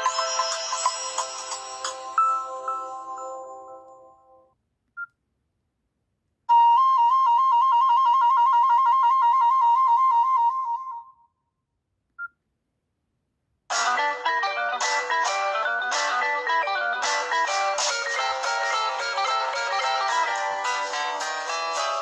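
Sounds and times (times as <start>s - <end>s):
electronic ringtone trill: 0.0s - 3.9s, 13.7s - 22.0s
plucked guitar-like chords: 13.7s - 22.0s.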